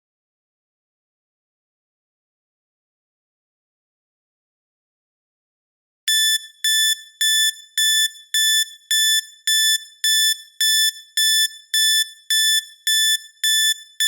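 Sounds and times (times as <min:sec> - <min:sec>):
high-pitched timer beeps: 0:06.1 - 0:14.0.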